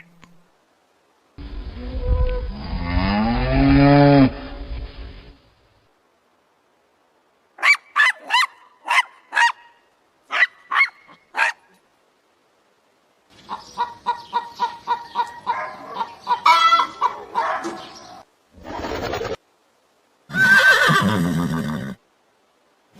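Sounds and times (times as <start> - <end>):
geese honking: 14.9 - 17.4.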